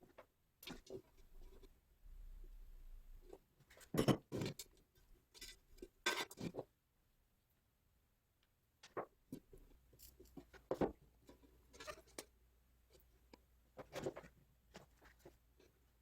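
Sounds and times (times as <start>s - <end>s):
small parts clicking and rustling: 8.8s - 12.3s.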